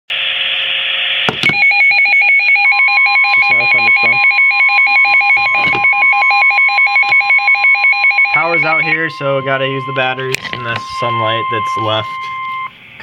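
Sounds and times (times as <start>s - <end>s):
pulsing electronic alarm beep: 0.1s - 12.8s
steady warning tone: 0.1s - 13.0s
radio hiss: 8.4s - 13.0s
radio click: 10.3s - 11.2s.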